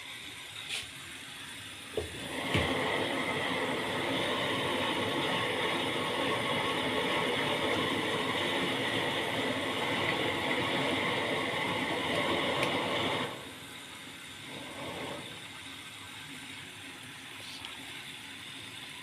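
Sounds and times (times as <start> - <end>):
water heater rushing: 1.6 - 16.1.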